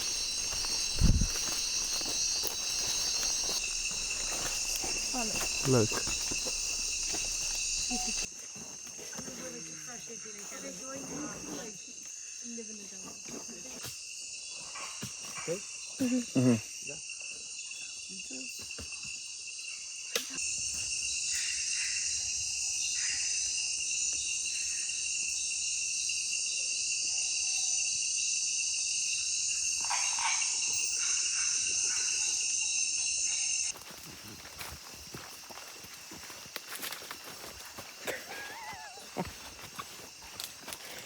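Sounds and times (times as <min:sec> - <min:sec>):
crickets and insects shrilling: 0:00.0 - 0:41.0
low voices: 0:04.3 - 0:07.1.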